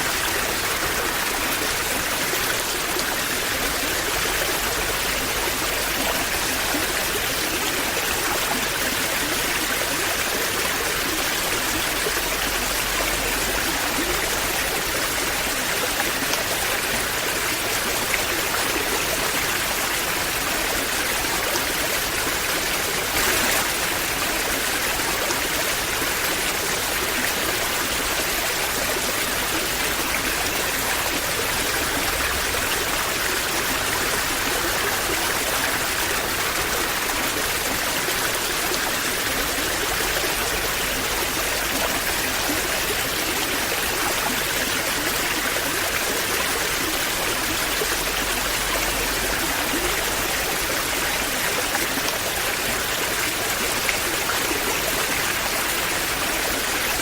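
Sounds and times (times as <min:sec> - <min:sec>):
waterfall rushing: 0:22.0 - 0:39.2.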